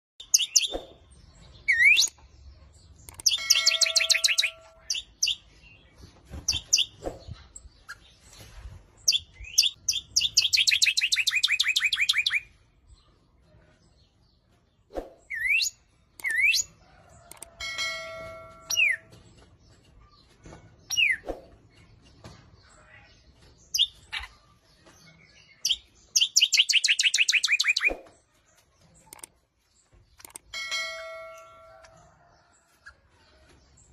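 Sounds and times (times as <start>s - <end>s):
finches and lovebirds chirping: 0.2s - 14.0s
buzzy bird trills: 3.1s - 5.4s.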